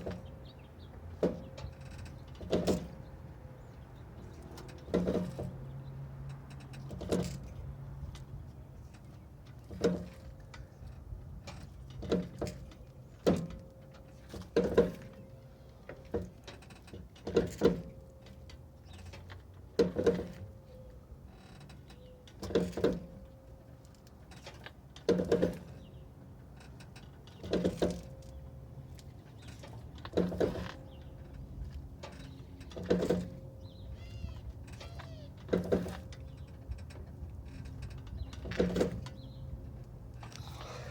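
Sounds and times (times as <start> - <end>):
popping and creaking: 34.0 - 39.2.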